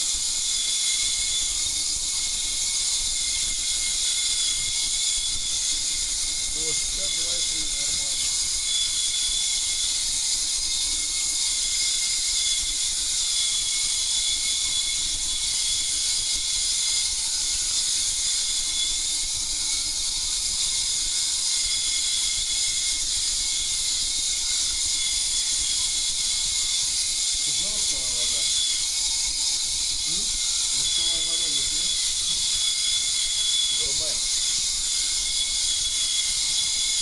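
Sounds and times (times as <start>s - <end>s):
high whistling tones: 0.1s - 19.3s, 21.1s - 37.0s.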